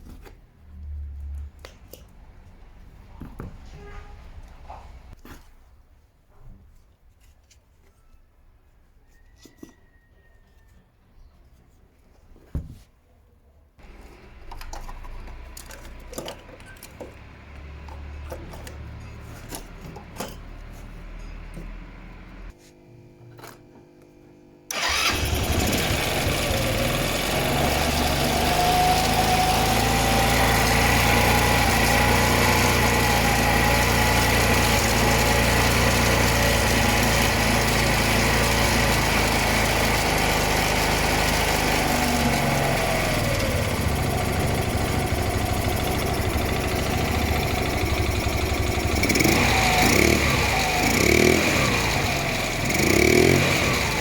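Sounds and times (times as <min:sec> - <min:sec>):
scooter engine running: 0:13.8 - 0:22.6, 0:24.7 - 0:54.0.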